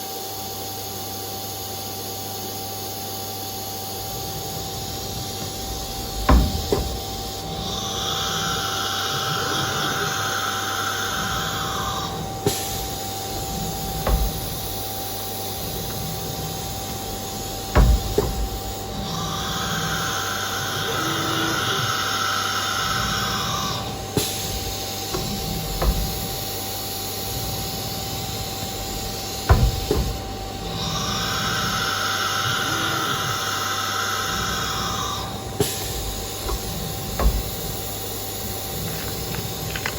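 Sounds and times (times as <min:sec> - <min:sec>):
high spindle whine: 0:01.6 - 0:39.9
machine hum: 0:01.7 - 0:39.9
tool changer clunks: 0:12.4 - 0:15.2, 0:15.8 - 0:18.8, 0:24.2 - 0:26.5, 0:35.6 - 0:38.0.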